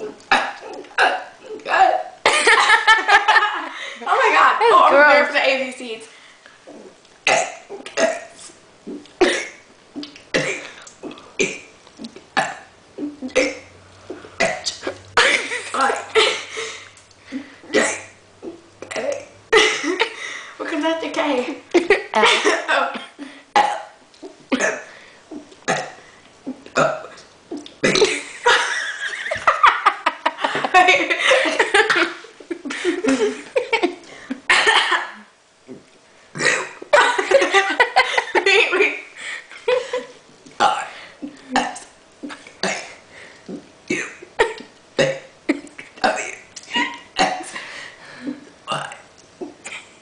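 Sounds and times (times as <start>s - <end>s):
girl burping: 0.0s - 2.1s, 6.7s - 8.3s, 8.9s - 13.7s, 14.4s - 16.5s, 17.7s - 20.0s, 22.2s - 28.2s, 40.6s - 41.9s, 43.5s - 47.5s, 48.6s - 49.6s.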